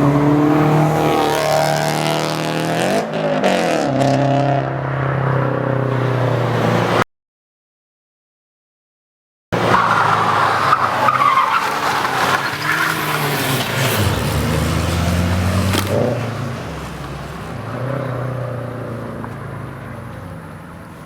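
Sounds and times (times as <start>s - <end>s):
car engine revving: 0.0s - 7.0s, 9.6s - 20.2s
tyres squealing: 9.6s - 14.2s.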